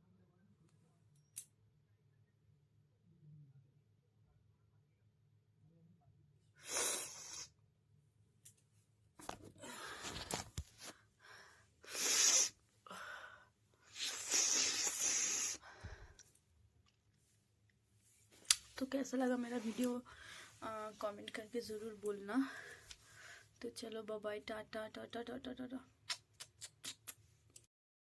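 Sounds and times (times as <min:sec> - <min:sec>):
woman blowing air through nose: 0:06.6 - 0:07.5, 0:11.8 - 0:12.6, 0:13.8 - 0:15.6.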